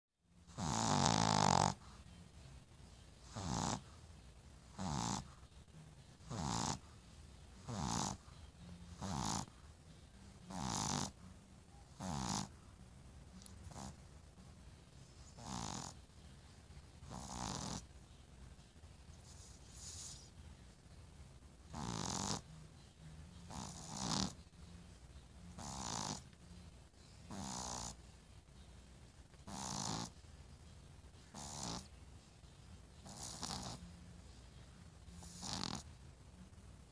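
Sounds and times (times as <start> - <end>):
pet snoring: 0.5 - 1.9, 3.2 - 3.9, 4.7 - 5.4, 6.2 - 6.9, 7.6 - 8.3, 8.9 - 9.6, 10.4 - 11.2, 11.9 - 12.6, 13.7 - 14.0, 15.2 - 16.0, 17.0 - 17.9, 19.3 - 20.3, 21.7 - 22.5, 23.4 - 24.4, 25.5 - 26.3, 27.3 - 28.0, 29.4 - 30.2, 31.3 - 31.9, 33.0 - 33.9, 35.0 - 35.9
person snoring: 0.6 - 1.8.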